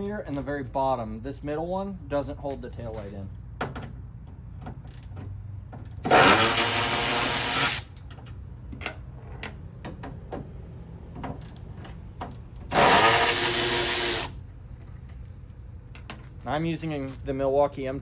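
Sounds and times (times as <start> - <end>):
cordless ratchet whirring: 6.0 - 7.9, 12.6 - 14.4.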